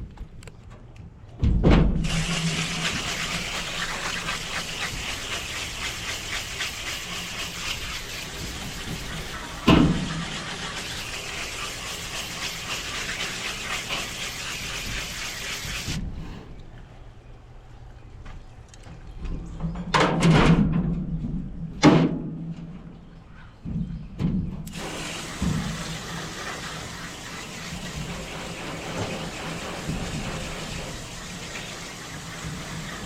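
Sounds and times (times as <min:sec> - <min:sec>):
hissing spray: 0:02.0 - 0:16.3, 0:24.7 - 0:33.0.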